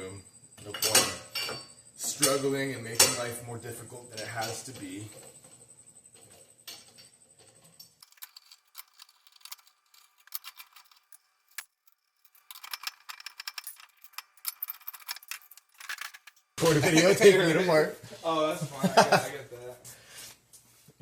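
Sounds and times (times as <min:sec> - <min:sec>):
metal hand tools clinking: 0:08.0 - 0:16.6.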